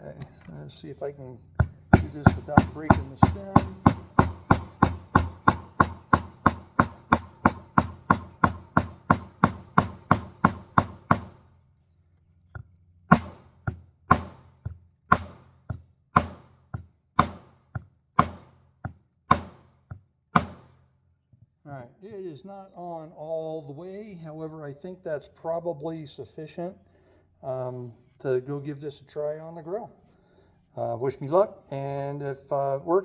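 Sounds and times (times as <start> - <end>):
tapping on metal sleeve: 1.5 - 11.4, 12.5 - 20.8.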